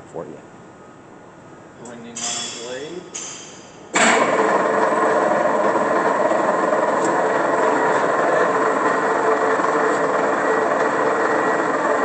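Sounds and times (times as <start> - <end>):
band saw running: 4.0 - 12.0.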